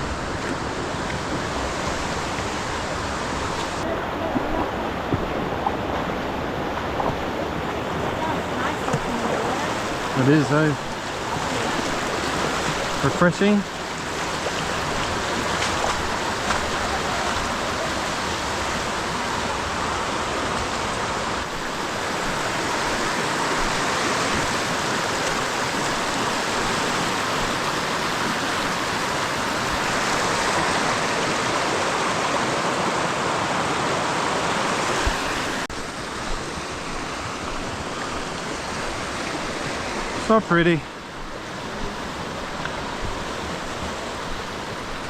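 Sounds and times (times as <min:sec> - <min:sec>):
waterfall rushing: 0:00.0 - 0:45.0.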